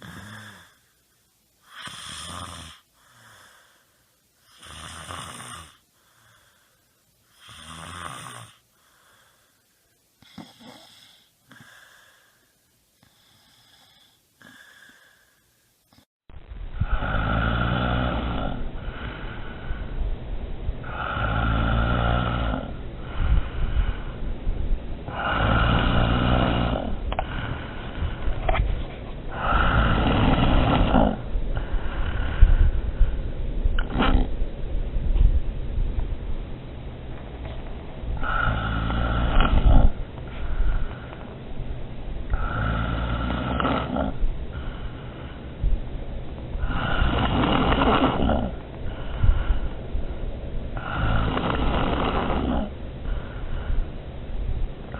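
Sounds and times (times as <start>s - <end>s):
person snoring: 0.0s - 0.9s, 1.6s - 3.8s, 4.4s - 6.6s, 7.3s - 9.4s, 10.2s - 12.4s, 13.0s - 15.4s, 16.7s - 19.8s, 20.8s - 24.1s, 25.1s - 28.2s, 29.3s - 32.8s, 33.8s - 34.4s, 38.2s - 41.3s, 42.3s - 45.4s, 46.6s - 49.6s, 50.8s - 53.6s.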